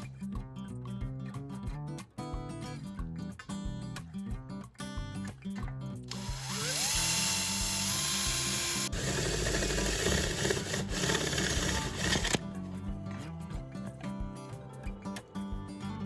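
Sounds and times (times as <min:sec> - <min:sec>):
drill bit grinding into material: 0:06.1 - 0:12.4
electric drill whine: 0:06.1 - 0:12.4.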